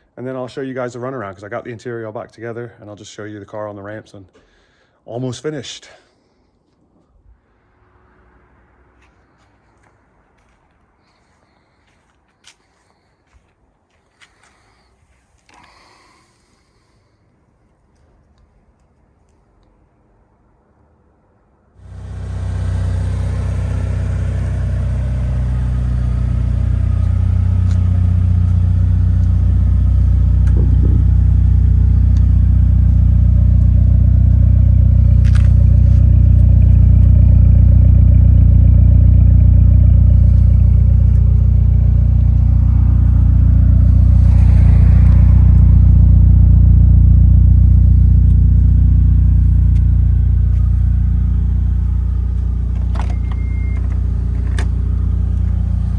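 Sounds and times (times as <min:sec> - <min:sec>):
car engine idling: 0:21.8 - 0:55.9.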